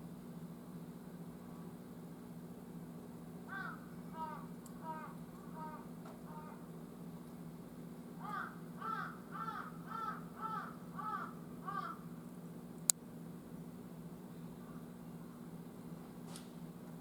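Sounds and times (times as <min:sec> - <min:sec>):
crow cawing: 0:03.5 - 0:06.7, 0:08.2 - 0:12.1.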